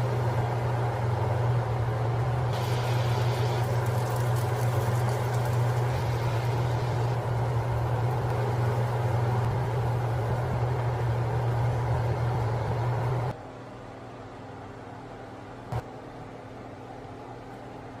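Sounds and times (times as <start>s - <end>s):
motor hum with rushing noise: 0.0s - 13.4s.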